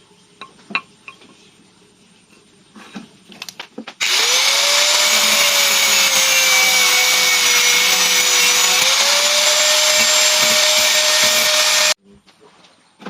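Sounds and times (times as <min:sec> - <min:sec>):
electric power tool motor whine: 0:04.0 - 0:12.0.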